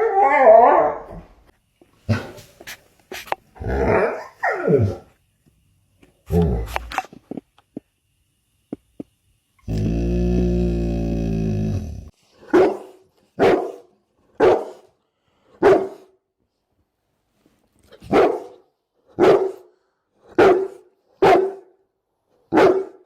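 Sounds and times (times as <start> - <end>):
dog barking: 12.4 - 14.9, 15.6 - 16.2, 18.1 - 19.7, 20.3 - 21.8, 22.5 - 23.0.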